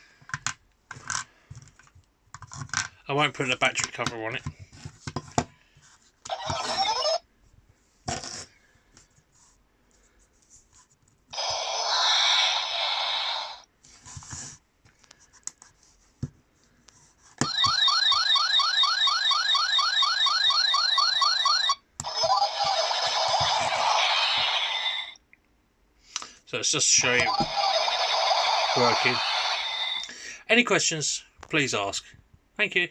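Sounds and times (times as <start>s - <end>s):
toy electronic sound effects: 6.3s - 7.2s, 11.4s - 13.7s, 17.4s - 25.2s, 27.0s - 30.1s
rapid rising electronic chirps: 20.0s - 25.2s, 27.2s - 30.0s.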